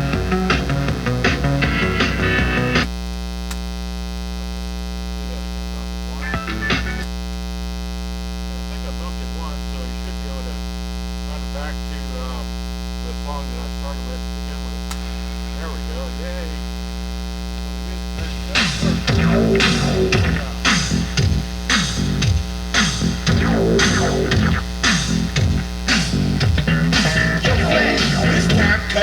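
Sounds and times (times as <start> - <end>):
loud music: 0.0 - 2.9, 6.3 - 7.0, 18.2 - 29.0
loud mains hum from speaker: 2.8 - 29.0
faint programme audio: 18.2 - 29.0.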